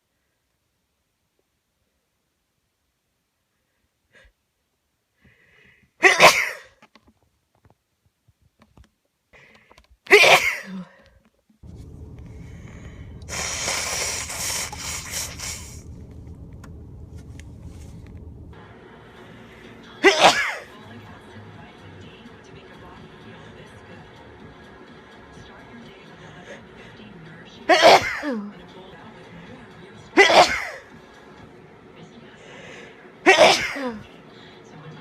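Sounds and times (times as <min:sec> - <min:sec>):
person sneezing: 0:06.0 - 0:06.8, 0:10.1 - 0:11.0, 0:12.4 - 0:16.0, 0:20.0 - 0:20.7, 0:33.3 - 0:34.0
hissing noise: 0:11.6 - 0:18.6
steady low hum: 0:11.6 - 0:20.0
short breath in: 0:12.4 - 0:15.9.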